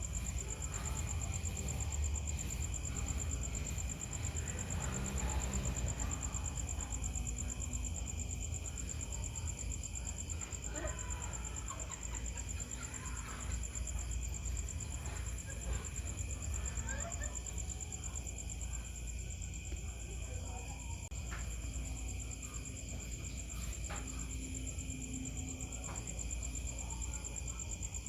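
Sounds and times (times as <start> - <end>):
night insects trilling: 0.0 - 28.0.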